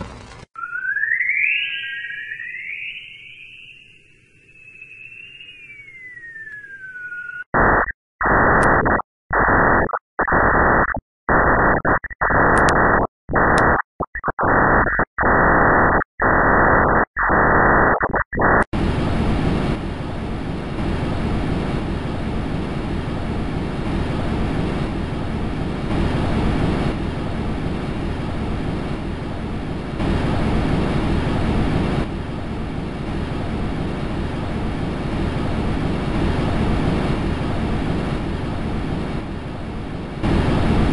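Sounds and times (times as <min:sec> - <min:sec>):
static-like hiss: 0:00.0 - 0:00.5, 0:14.4 - 0:40.9.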